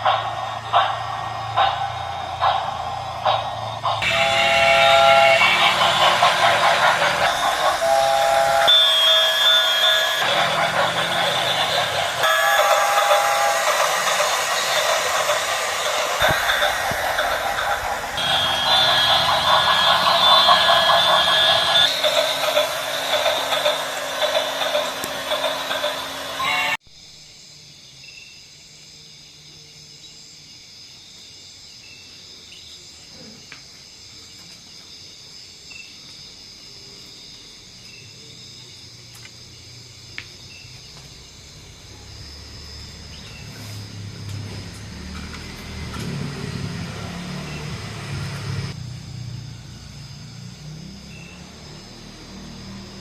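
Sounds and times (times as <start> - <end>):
model train whirring and rattling: 0.0 - 26.8, 41.2 - 48.8
steam hissing: 0.0 - 26.8
steam locomotive chuffing: 0.0 - 26.8, 41.3 - 53.0
steam whistle: 3.7 - 26.8
high ringing tones: 7.3 - 10.3, 12.2 - 22.7.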